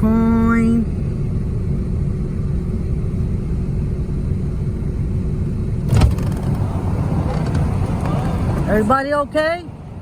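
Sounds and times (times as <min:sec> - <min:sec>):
traffic rumble: 0:00.0 - 0:10.0
loud thump: 0:05.8 - 0:06.6.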